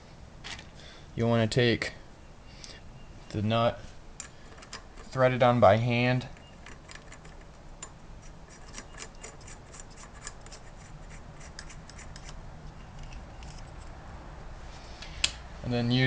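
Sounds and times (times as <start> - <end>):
metallic clicks and scraping: 4.2 - 5.3, 6.2 - 14.0.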